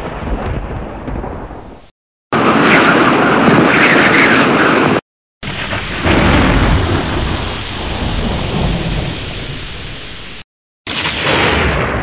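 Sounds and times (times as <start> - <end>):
rain and thunder: 0.0 - 12.0.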